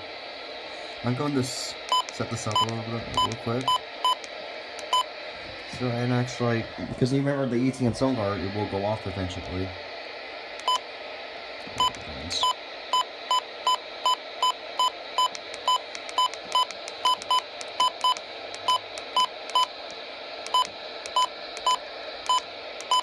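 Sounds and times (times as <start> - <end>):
steady hiss: 0.0 - 14.0.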